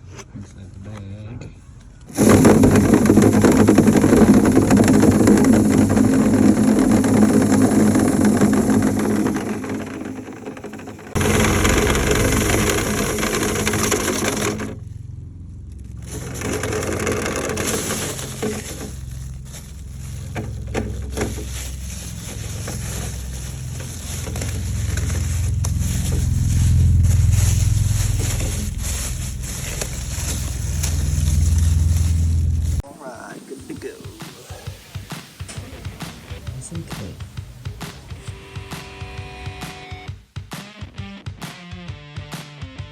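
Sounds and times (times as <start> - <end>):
low motor drone: 2.0 - 32.8
rotary brush knocking in duct: 2.1 - 14.8, 15.8 - 32.8.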